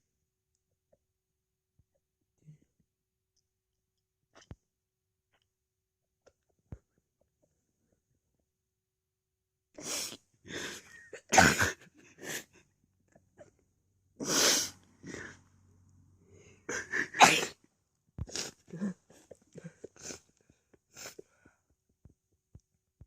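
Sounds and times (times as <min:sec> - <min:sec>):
person sneezing: 0:09.8 - 0:12.5, 0:14.2 - 0:15.4, 0:16.7 - 0:17.6.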